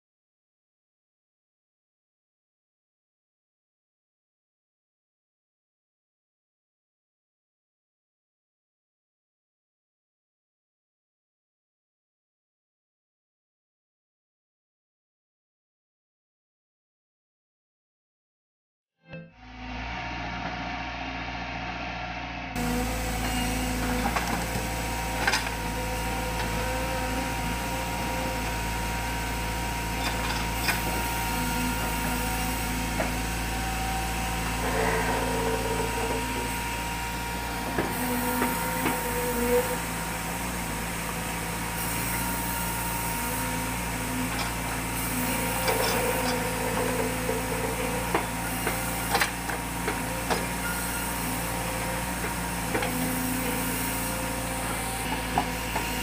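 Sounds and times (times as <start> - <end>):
sawmill machinery running: 19.4 - 56.0.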